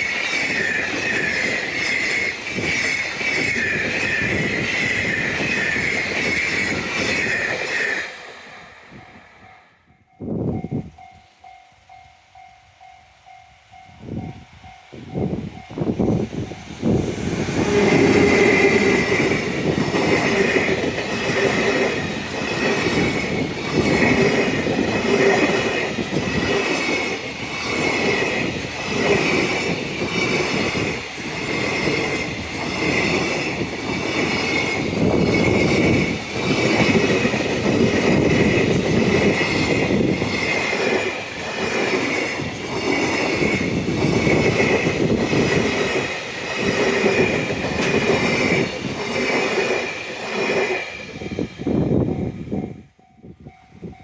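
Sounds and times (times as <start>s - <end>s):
train wheels rumbling on rails: 0.0s - 54.0s
high ringing squeal: 10.9s - 19.7s.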